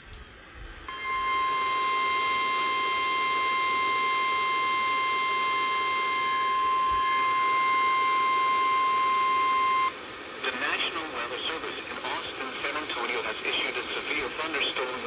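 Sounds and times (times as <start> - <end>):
steady alarm tone: 0.9 - 9.9
radio hiss: 8.7 - 15.0.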